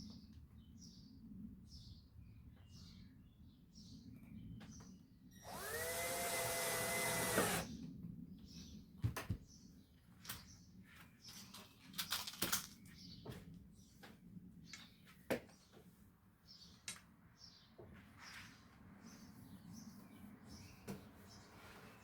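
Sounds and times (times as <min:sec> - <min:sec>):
cordless drill spinning: 0:05.4 - 0:07.7.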